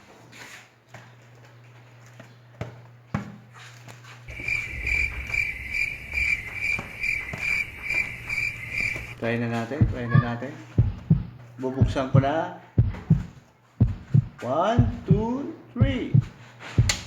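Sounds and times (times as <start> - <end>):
insect chirping trill: 4.3 - 9.2
faint low hum: 4.3 - 16.2.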